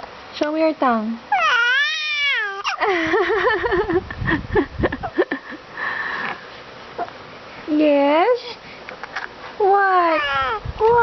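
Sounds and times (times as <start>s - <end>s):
baby cooing: 1.3s - 2.8s, 10.1s - 10.6s.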